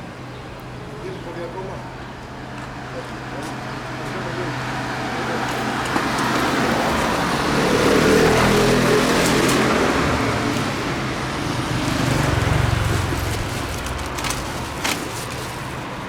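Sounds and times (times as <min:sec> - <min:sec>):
vehicle engine running: 0:05.2 - 0:16.0.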